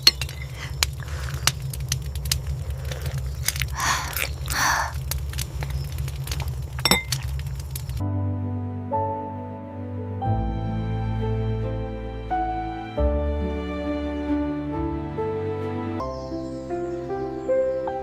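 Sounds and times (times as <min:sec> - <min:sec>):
dishes clinking and knocking: 0:00.0 - 0:00.7, 0:06.8 - 0:07.2
soft music: 0:08.0 - 0:18.0.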